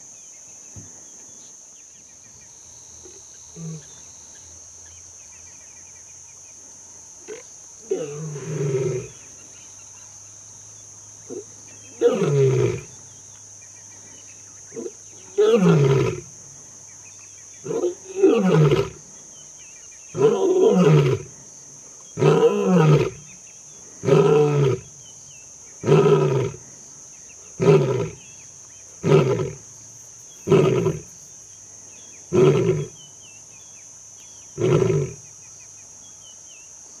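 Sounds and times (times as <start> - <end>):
lioness roaring: 20.2 - 21.3, 22.2 - 23.2, 24.0 - 24.9, 25.8 - 26.6, 27.6 - 28.2, 29.0 - 29.6, 30.5 - 31.1, 32.3 - 33.0, 34.6 - 35.2.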